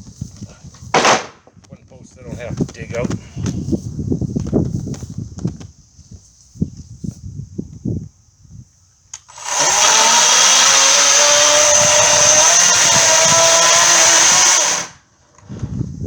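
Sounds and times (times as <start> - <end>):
electric chainsaw cutting wood: 9.2 - 15.0.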